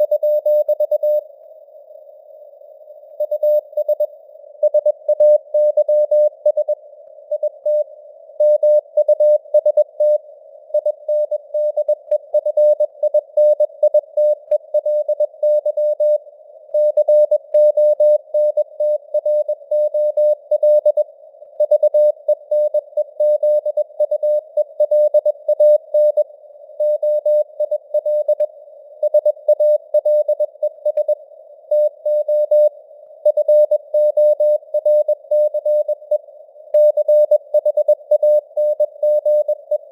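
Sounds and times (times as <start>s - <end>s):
morse code beeps: 36.8s - 39.9s.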